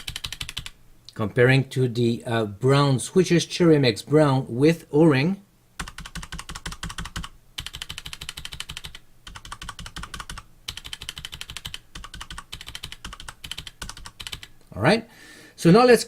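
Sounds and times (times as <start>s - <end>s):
rapid typing on mechanical keyboard: 0.0s - 0.7s, 5.8s - 14.5s.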